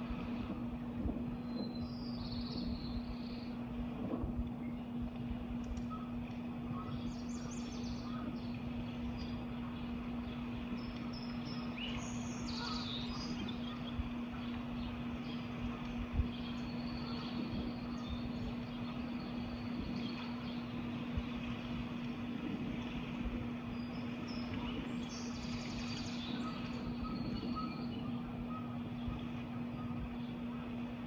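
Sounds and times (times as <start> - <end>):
constant hum: 0.0 - 31.0
birds chirping: 5.7 - 21.0, 23.6 - 31.0.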